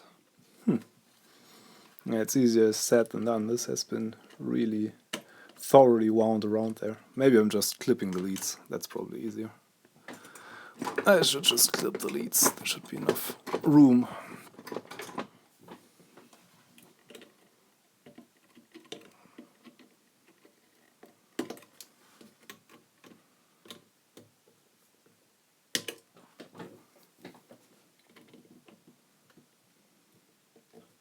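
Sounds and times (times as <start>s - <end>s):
small clicks and handling: 14.5s - 24.3s, 25.7s - 29.4s.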